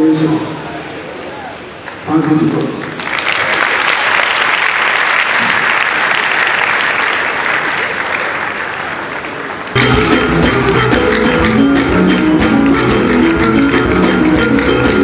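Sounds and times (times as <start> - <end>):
congregation clapping: 1.8 - 15.0
band music: 9.8 - 15.0.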